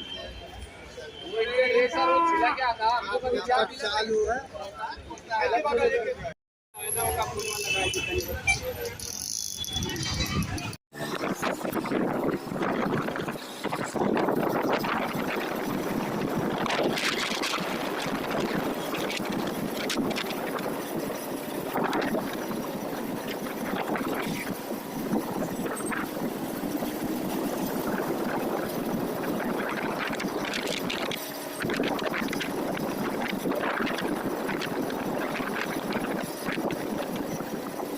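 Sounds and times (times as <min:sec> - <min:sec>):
moving vehicle rushing noise: 0:09.4 - 0:37.9.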